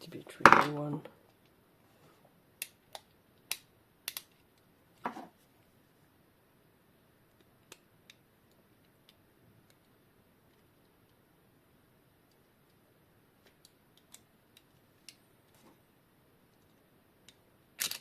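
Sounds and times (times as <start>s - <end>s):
small sharp clicks and taps: 2.6s - 4.7s, 7.3s - 11.2s, 13.4s - 15.6s.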